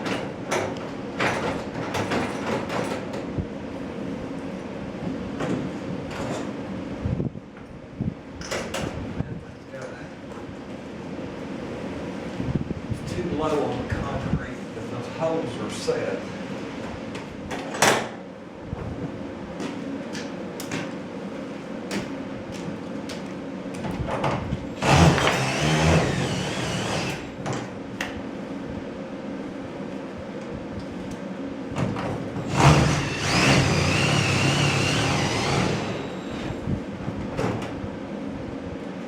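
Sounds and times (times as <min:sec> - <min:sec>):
power drill driving screws: 0:24.8 - 0:27.3, 0:32.5 - 0:36.5.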